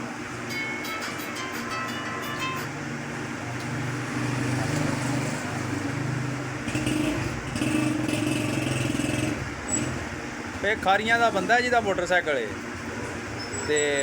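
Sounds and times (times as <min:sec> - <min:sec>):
motorcycle engine running: 0:03.9 - 0:11.5.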